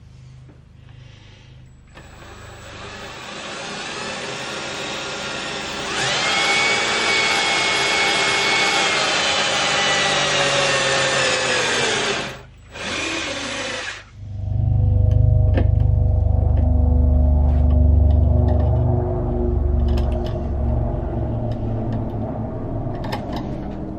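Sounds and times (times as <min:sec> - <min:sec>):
power tool motor whining: 0:01.9 - 0:14.7.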